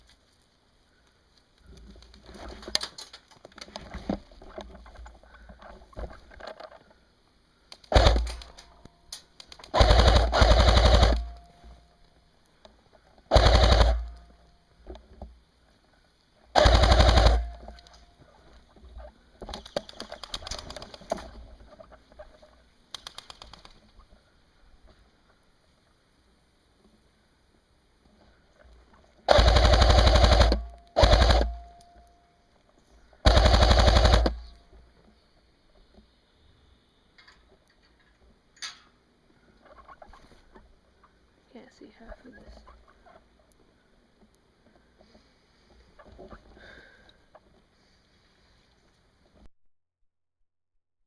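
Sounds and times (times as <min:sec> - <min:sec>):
quiet irregular crackle: 0:00.0 - 0:13.3, 0:13.9 - 0:49.5
airsoft rifle automatic bursts: 0:07.8 - 0:08.6, 0:09.5 - 0:11.5, 0:13.3 - 0:14.3, 0:16.5 - 0:17.8, 0:29.3 - 0:31.8, 0:33.2 - 0:34.6.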